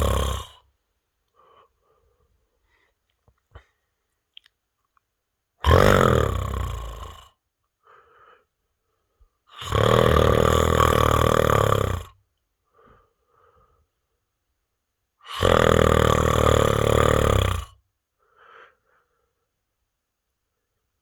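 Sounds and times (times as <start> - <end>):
man snoring: 0.0 - 0.6, 5.6 - 7.4, 9.5 - 12.2, 15.3 - 17.8
faint breaths: 0.0 - 4.2, 6.8 - 9.4, 12.6 - 14.2, 18.2 - 19.6.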